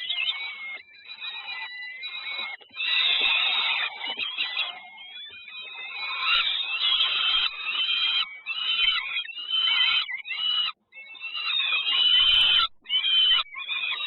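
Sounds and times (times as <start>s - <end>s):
chicks begging calls: 0.0s - 14.0s.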